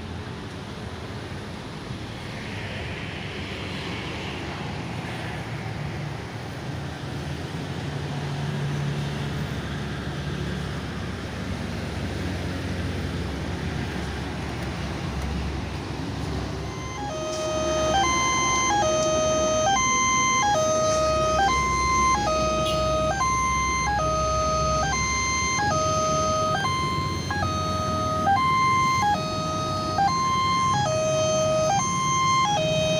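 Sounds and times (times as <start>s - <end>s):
road traffic rumble: 0.0s - 32.9s
level crossing warning siren: 16.6s - 32.9s.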